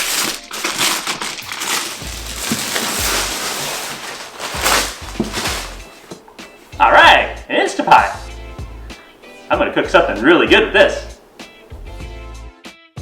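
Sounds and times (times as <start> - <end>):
packaging paper rustling: 0.0 - 6.8
dull bumps of box handling: 2.1 - 6.6.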